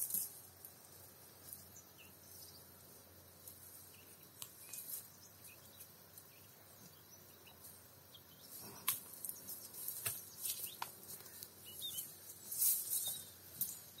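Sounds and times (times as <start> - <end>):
soft steady hiss: 0.0 - 14.0
faint bird chirps: 3.8 - 14.0.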